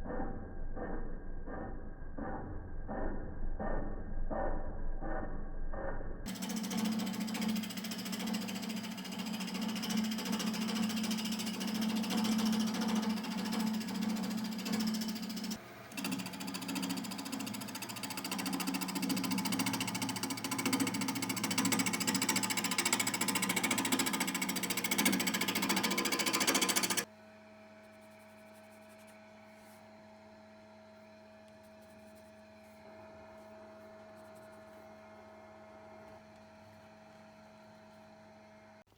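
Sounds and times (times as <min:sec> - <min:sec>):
tool scraping wood: 0:06.3 - 0:27.1
wood lathe droning: 0:06.3 - 0:27.1.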